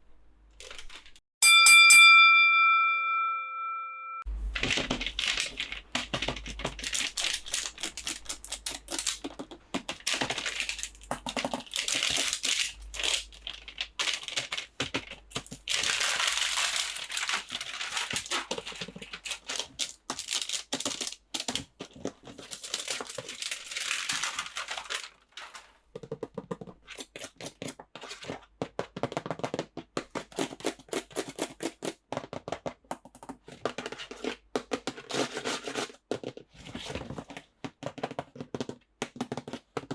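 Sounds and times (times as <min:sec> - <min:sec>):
packaging crinkling and tearing: 0:00.5 - 0:01.2, 0:04.3 - 0:28.4.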